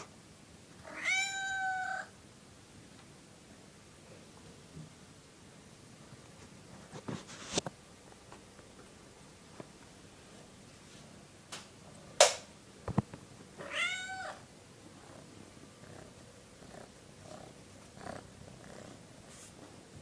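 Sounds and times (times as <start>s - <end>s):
cat meowing: 0.8s - 2.1s, 13.6s - 14.4s
sharp click: 11.5s - 12.5s.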